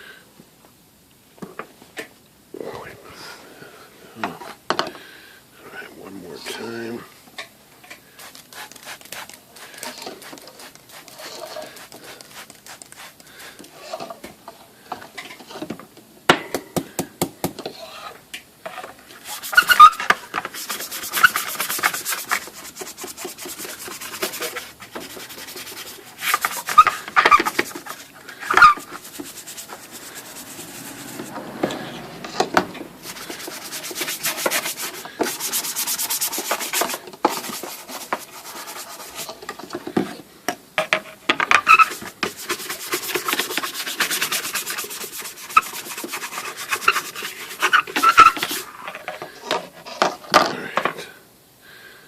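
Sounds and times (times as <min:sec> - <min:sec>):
rag rubbing on panel: 0:08.2 - 0:13.6, 0:19.2 - 0:39.4, 0:41.5 - 0:49.0.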